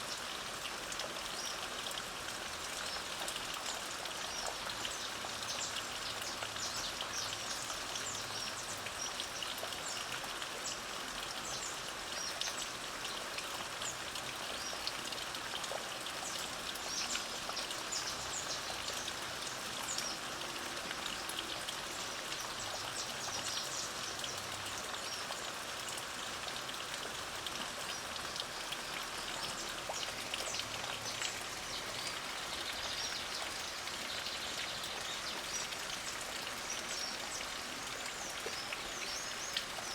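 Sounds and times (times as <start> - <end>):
light rain falling: 0.0 - 39.9
small birds chirping: 27.8 - 39.9.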